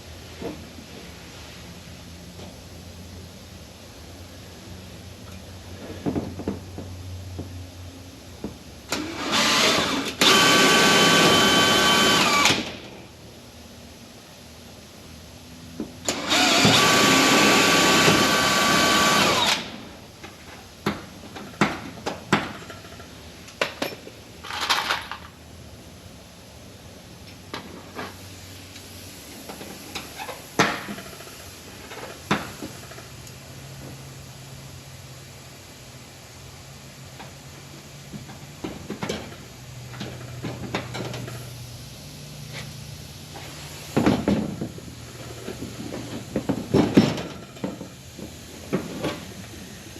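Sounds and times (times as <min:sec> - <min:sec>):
small motor tool whining: 0:09.0 - 0:12.7, 0:16.1 - 0:19.7.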